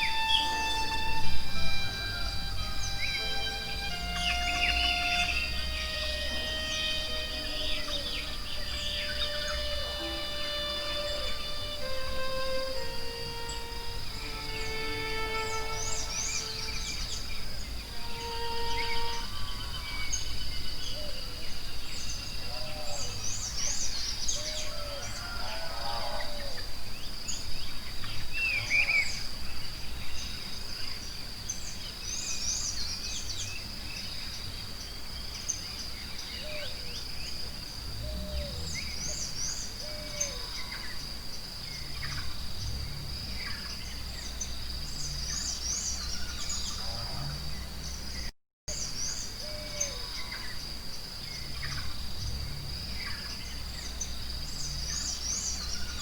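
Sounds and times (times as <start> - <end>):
birds chirping and whistling: 0.0 - 21.2
high insect drone: 0.0 - 56.0
low rumble: 42.0 - 45.5, 51.5 - 55.1.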